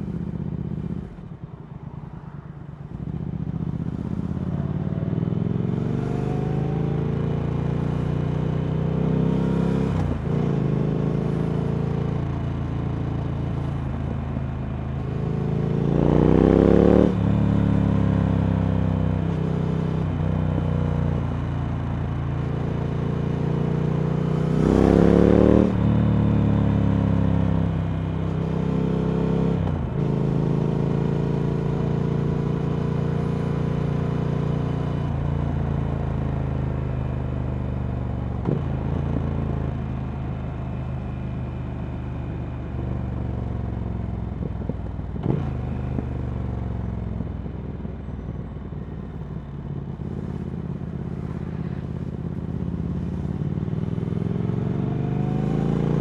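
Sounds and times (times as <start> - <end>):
motorcycle engine revving: 15.0 - 21.3, 22.4 - 37.6, 42.7 - 47.2, 47.8 - 56.0.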